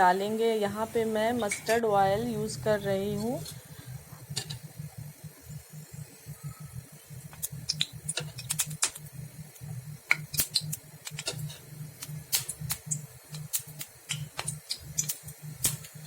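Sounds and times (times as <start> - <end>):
low hum: 0.3 - 13.4
hot oil crackling and popping: 0.7 - 16.0.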